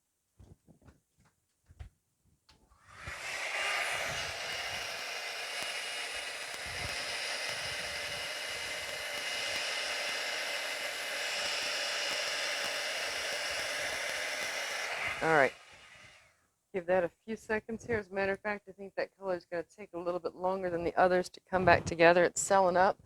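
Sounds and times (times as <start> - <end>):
hair dryer blowing: 2.7 - 16.4.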